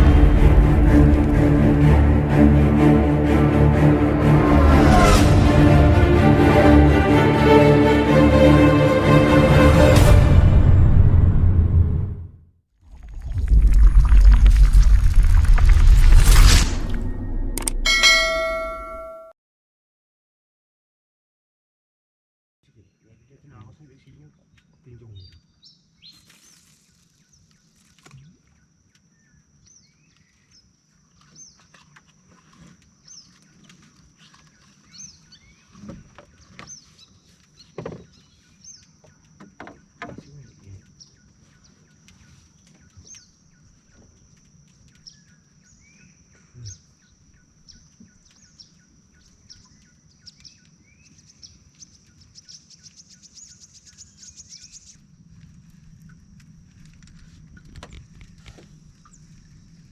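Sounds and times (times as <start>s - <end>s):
insect drone: 41.8s - 59.9s.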